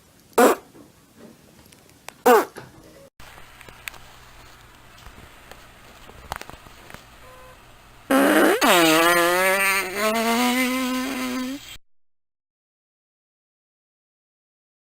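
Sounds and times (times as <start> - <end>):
long buzzy fart: 0.4 - 0.7, 2.3 - 2.6, 8.1 - 11.8.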